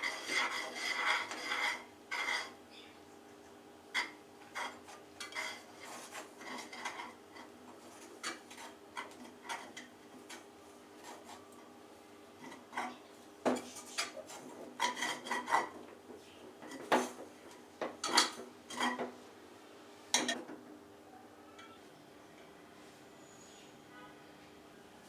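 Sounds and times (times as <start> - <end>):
utensils knocking against cookware: 12.4 - 19.1.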